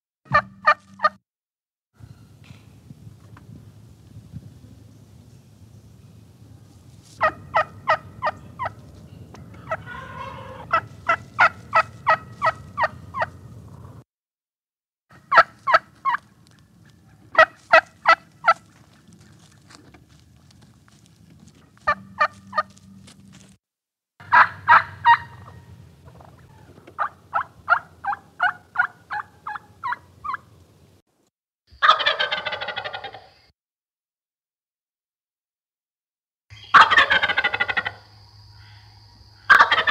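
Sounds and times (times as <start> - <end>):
rattling turkey gobble: 0.3 - 1.2, 7.2 - 8.8, 9.5 - 13.4, 15.3 - 16.2, 16.8 - 19.6, 24.2 - 30.5, 31.8 - 33.4, 36.6 - 38.2, 39.4 - 39.9
turkey yelping: 0.4 - 1.1, 7.2 - 8.8, 9.5 - 13.4, 15.3 - 16.2, 16.8 - 18.9, 21.9 - 22.7, 24.2 - 30.4, 31.8 - 33.3, 36.6 - 38.1, 39.5 - 39.9.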